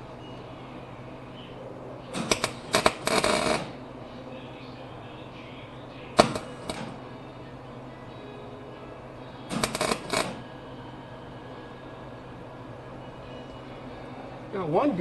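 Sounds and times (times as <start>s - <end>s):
welder arc crackling: 2.1s - 3.8s, 6.2s - 7.0s, 9.5s - 10.5s.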